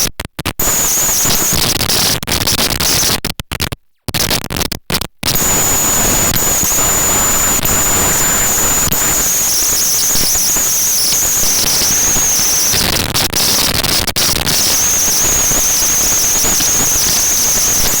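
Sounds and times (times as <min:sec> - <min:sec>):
thin high whine: 0:00.6 - 0:01.7, 0:05.3 - 0:13.7, 0:14.5 - 0:18.0.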